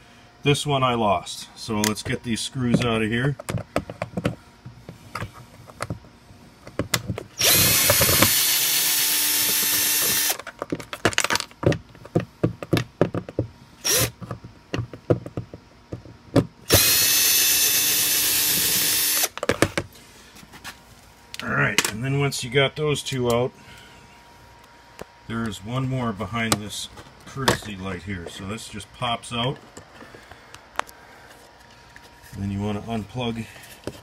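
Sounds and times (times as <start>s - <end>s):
power drill-driver running: 7.4s - 10.4s, 13.8s - 14.2s, 16.7s - 19.4s.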